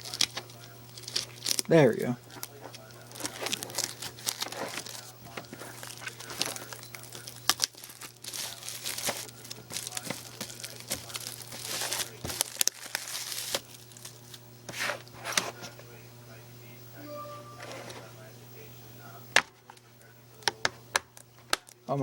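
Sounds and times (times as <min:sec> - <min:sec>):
plastic packaging crinkling: 0:00.0 - 0:14.4.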